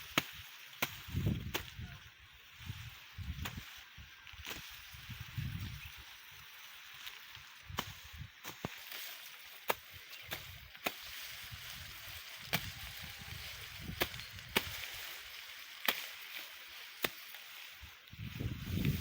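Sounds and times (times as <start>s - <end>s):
blade chopping grass stalks: 0.0s - 1.8s, 3.2s - 5.2s, 7.0s - 19.0s
leaves rustling: 0.0s - 19.0s.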